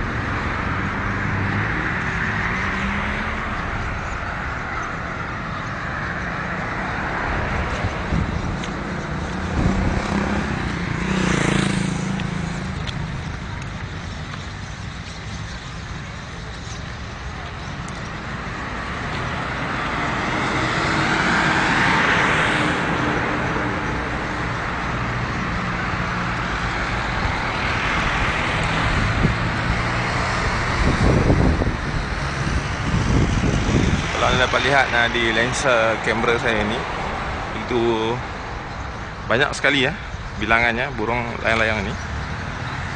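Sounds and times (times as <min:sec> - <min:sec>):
vehicle passing by: 0:00.0 - 0:14.1, 0:16.0 - 0:38.7
road traffic: 0:00.0 - 0:42.9.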